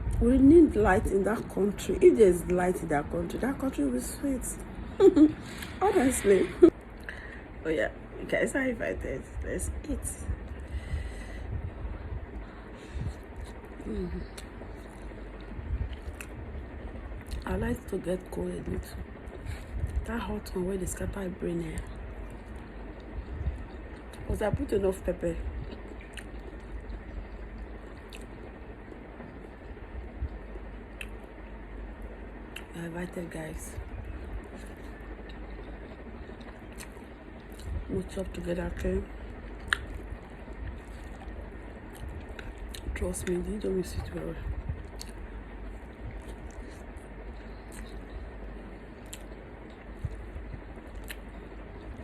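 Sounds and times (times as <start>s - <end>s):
person chewing food: 25.6s - 28.4s, 34.1s - 37.8s, 39.4s - 42.9s, 44.8s - 48.4s, 49.0s - 52.0s.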